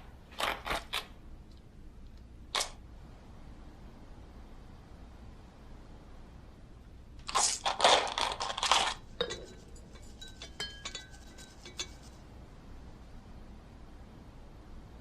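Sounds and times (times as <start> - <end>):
dishes clattering: 8.7 - 12.2.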